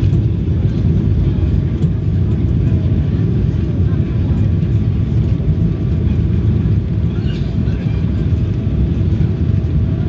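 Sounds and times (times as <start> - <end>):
airliner cabin rumble: 0.0 - 10.0.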